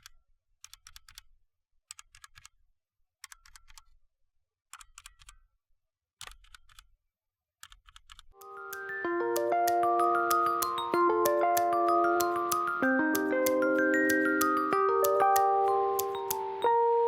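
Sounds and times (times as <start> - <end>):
mechanical keyboard typing: 8.4 - 17.0
music with chiming mallet notes: 8.4 - 17.0.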